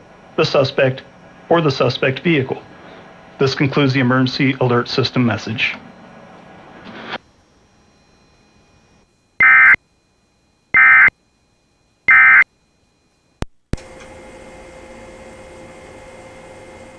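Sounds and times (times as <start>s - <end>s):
digital data tone bursts: 9.4s - 9.8s, 10.7s - 11.1s, 12.1s - 12.5s.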